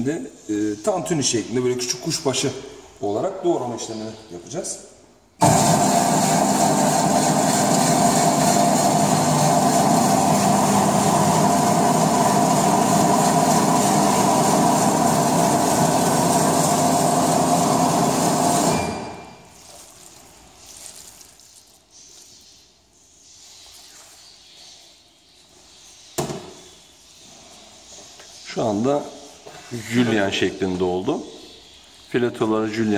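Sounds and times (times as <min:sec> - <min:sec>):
dicing machine running: 0:05.4 - 0:19.3
faint handling sounds: 0:19.5 - 0:25.9.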